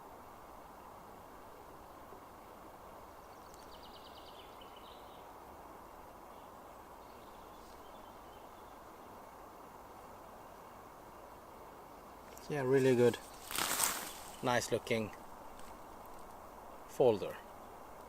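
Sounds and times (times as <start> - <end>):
faint outdoor background noise: 0.0 - 18.0
songbird chirping: 0.6 - 18.0.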